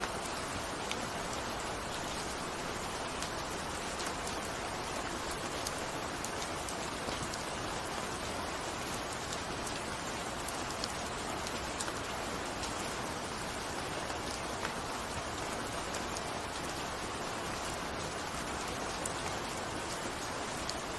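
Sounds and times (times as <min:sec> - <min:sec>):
raindrops ticking on hard surface: 0:00.0 - 0:20.9
steady rain hiss: 0:00.0 - 0:20.9.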